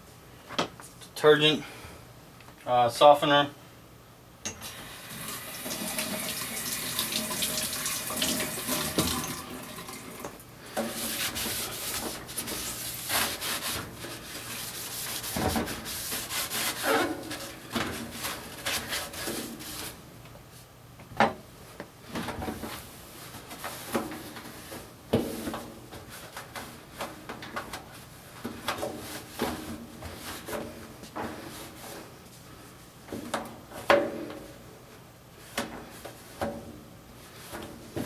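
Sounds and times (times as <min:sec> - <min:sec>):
water splashing in washing machine: 0:05.0 - 0:11.9.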